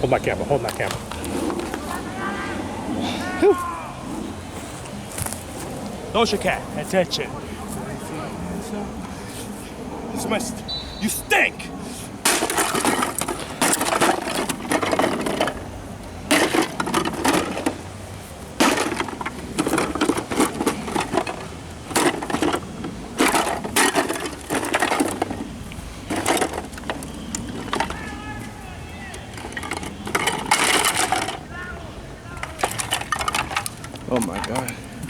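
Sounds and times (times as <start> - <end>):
electronics being smashed: 12.3 - 15.5.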